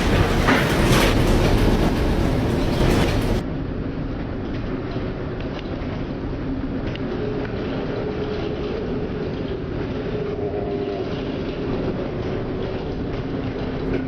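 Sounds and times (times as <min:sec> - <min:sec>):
ship engine rumble: 0:00.0 - 0:03.4
constant droning hum: 0:00.0 - 0:14.0.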